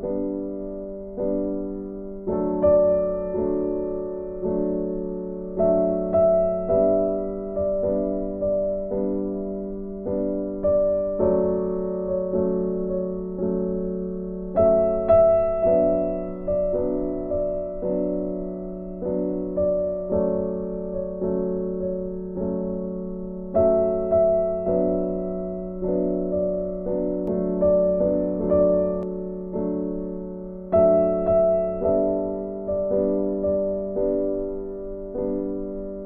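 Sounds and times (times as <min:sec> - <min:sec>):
soft piano melody: 0:00.0 - 0:36.0.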